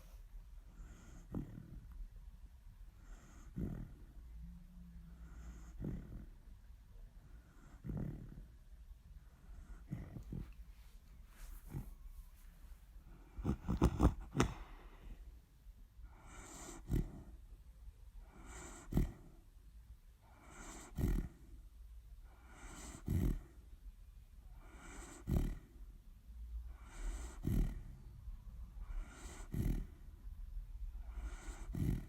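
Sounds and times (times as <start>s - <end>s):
dog snoring: 0.0s - 2.0s, 3.0s - 6.6s, 7.2s - 10.6s, 11.6s - 12.0s, 13.0s - 15.2s, 16.0s - 17.4s, 18.2s - 19.4s, 20.2s - 21.6s, 22.2s - 23.7s, 24.4s - 25.9s, 26.6s - 28.1s, 28.7s - 30.1s, 30.8s - 32.0s.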